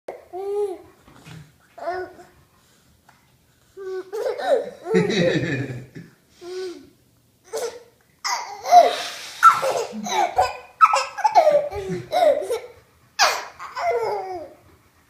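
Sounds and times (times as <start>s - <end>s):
toddler laughing: 3.8s - 5.6s, 7.5s - 14.6s.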